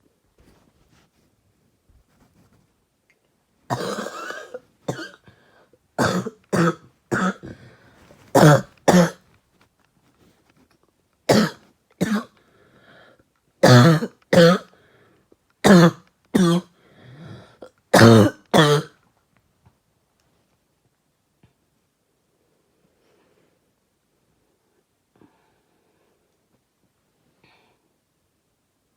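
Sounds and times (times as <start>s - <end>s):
person coughing: 3.7s - 5.2s, 6.0s - 7.6s, 8.3s - 9.2s, 11.3s - 12.3s, 13.6s - 14.7s, 15.7s - 16.7s, 18.0s - 18.9s.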